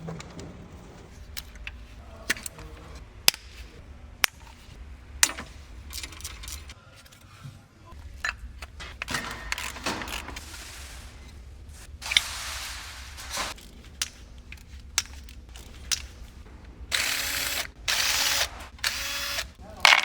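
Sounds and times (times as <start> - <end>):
metal clanks and scraping: 1.1 - 16.8.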